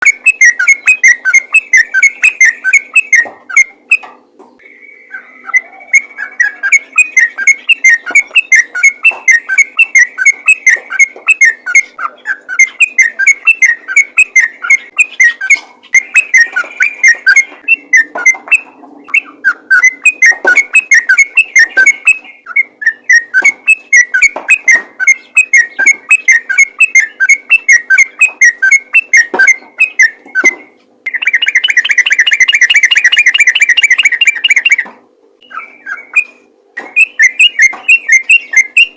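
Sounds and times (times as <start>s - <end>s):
bulbul singing whistled notes: 0.0s - 4.0s, 4.6s - 38.9s.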